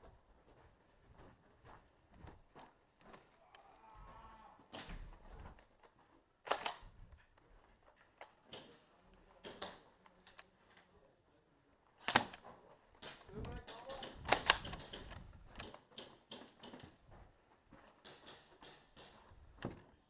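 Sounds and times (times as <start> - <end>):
airsoft guns firing: 13.0 - 16.9.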